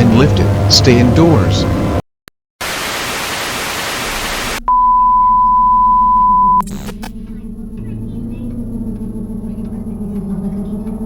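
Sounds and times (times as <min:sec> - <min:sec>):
broadcast static hiss: 0:02.6 - 0:04.6
high-pitched beep: 0:04.7 - 0:06.6.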